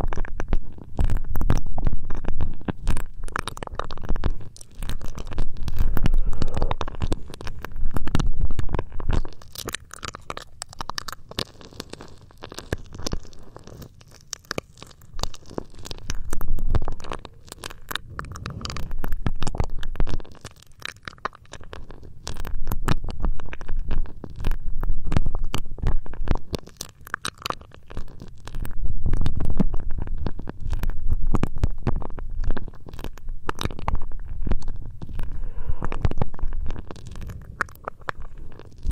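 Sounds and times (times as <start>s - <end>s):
rubbing on microphone: 0.0s - 9.5s, 14.8s - 20.6s, 28.1s - 38.9s.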